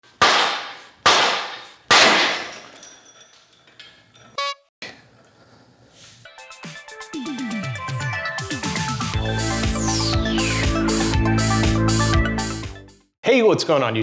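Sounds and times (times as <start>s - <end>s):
brief buzzy tone: 4.4s - 4.7s
electronic music: 6.6s - 12.8s.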